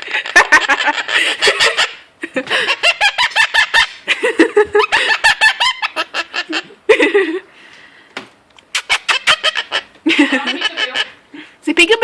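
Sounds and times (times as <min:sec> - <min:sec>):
parrot chattering: 0:00.2 - 0:02.0, 0:05.1 - 0:06.7, 0:08.6 - 0:11.2.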